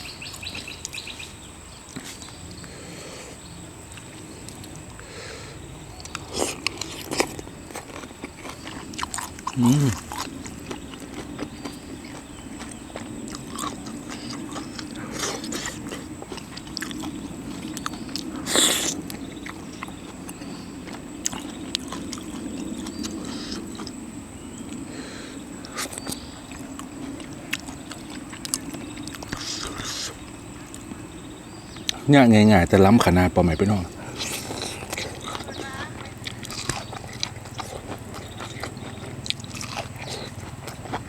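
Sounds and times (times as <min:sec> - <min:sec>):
faint steady hum: 0:00.0 - 0:41.0
chewing and biting seafood: 0:05.9 - 0:32.1, 0:33.9 - 0:41.0
mouth clicks and smacks: 0:25.6 - 0:31.0.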